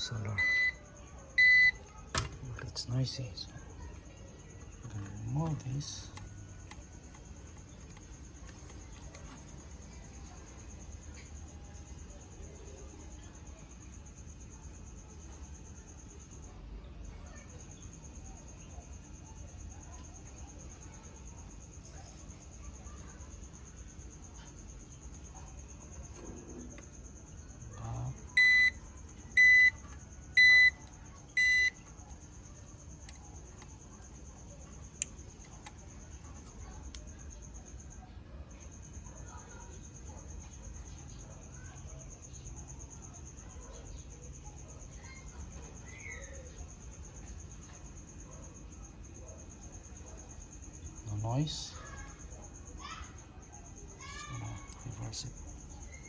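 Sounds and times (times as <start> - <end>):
short high beeps: 0.4 - 0.8, 1.4 - 1.8, 28.4 - 28.8, 29.4 - 29.7, 30.4 - 30.8, 31.4 - 31.7.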